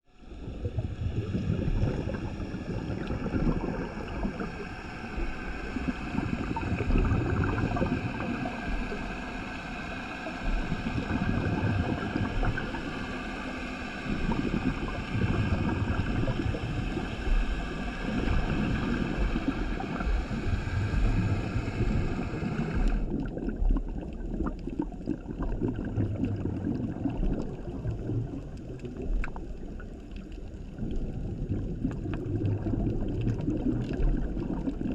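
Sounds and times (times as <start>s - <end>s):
exhaled air bubbling underwater: 0.1s - 34.9s.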